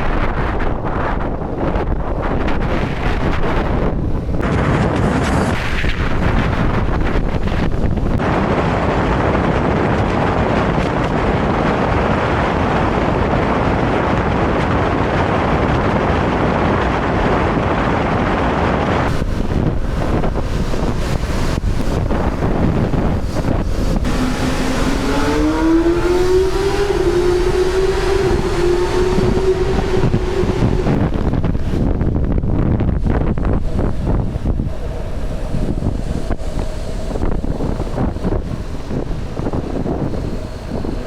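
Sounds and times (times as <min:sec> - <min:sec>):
wind rushing over microphone: 0:00.0 - 0:41.0
motorcycle engine accelerating: 0:19.1 - 0:41.0.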